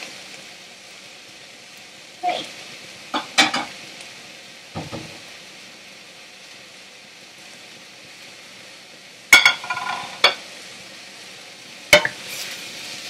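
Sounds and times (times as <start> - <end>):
food sizzling in a frying pan: 0.0 - 13.0
cookware clanking: 3.2 - 3.8, 9.4 - 10.4, 12.0 - 12.2
scraping in a pan: 9.5 - 10.4, 12.0 - 13.0.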